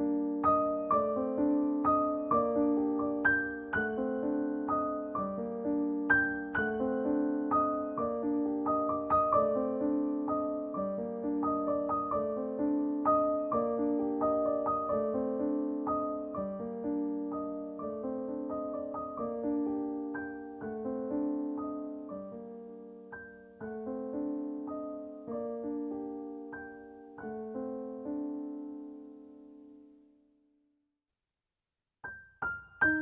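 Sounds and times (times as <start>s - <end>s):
soft slow piano: 0.0s - 30.6s, 32.0s - 33.0s.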